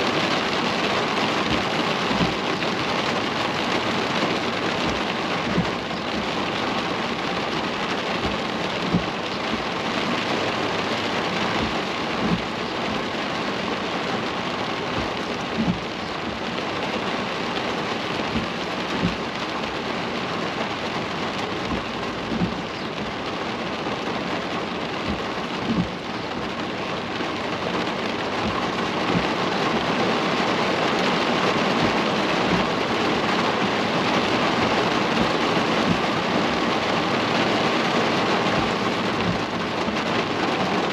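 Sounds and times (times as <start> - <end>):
rain falling on a car: 0.0 - 40.9
soft low thumps: 1.5 - 2.5, 4.7 - 10.3, 11.3 - 13.2, 14.2 - 16.6, 18.2 - 19.4, 21.4 - 23.2, 24.8 - 26.8, 28.0 - 29.5, 31.8 - 32.9, 34.6 - 36.2, 38.4 - 40.1.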